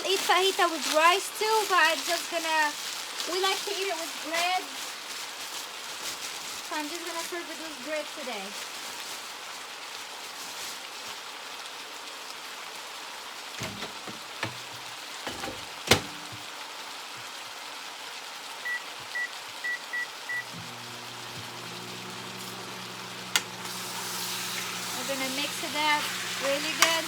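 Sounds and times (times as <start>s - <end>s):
food sizzling in a frying pan: 0.0s - 27.0s
microwave door shutting: 13.6s - 14.7s, 15.3s - 16.4s, 20.5s - 27.0s
microwave running hum: 13.6s - 14.7s, 15.3s - 16.4s, 20.4s - 27.0s
microwave keypad beeps: 18.7s - 20.6s.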